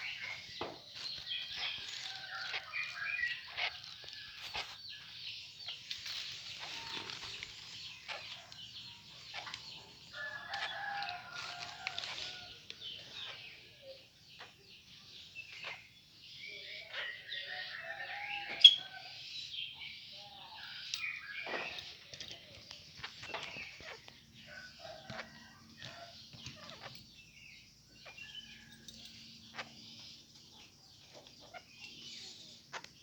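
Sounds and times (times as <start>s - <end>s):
bird chirping and clicking: 0.0s - 13.4s, 20.6s - 33.0s
rooster crowing: 10.1s - 12.7s, 17.4s - 19.2s, 24.5s - 26.1s.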